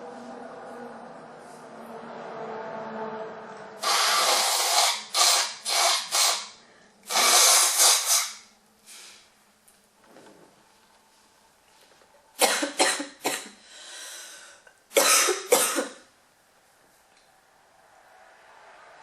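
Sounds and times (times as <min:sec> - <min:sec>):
person blowing nose forcefully: 0:03.8 - 0:09.2.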